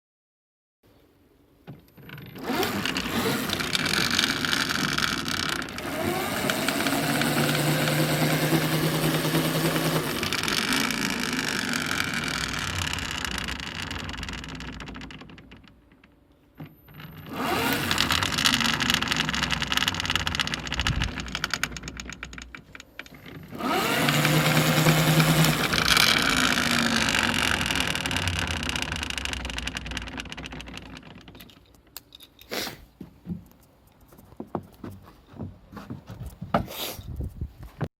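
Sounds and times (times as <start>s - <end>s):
electric bicycle wheel spinning: 2.0s - 15.7s, 16.6s - 31.5s.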